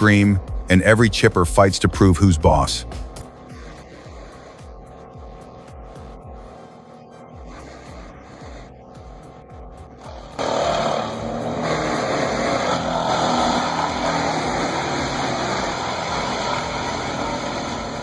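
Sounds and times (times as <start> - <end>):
wood chipper grinding: 10.0 - 18.0.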